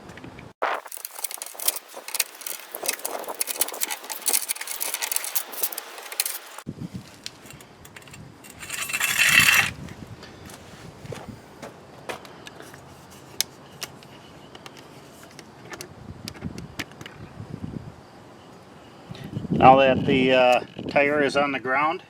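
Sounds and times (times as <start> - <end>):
rasping scrape: 0.6 - 6.7, 7.4 - 9.8.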